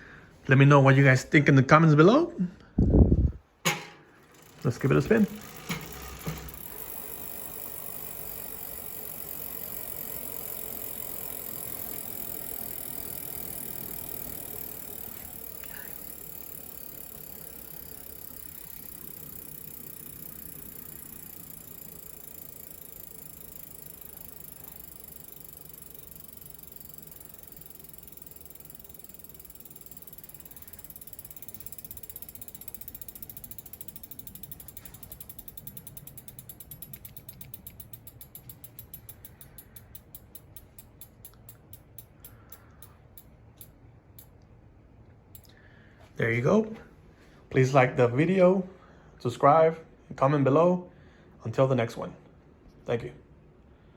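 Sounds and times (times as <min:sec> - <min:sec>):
bicycle hub freewheel clicking: 0:03.7 - 0:44.4, 0:45.3 - 0:45.6.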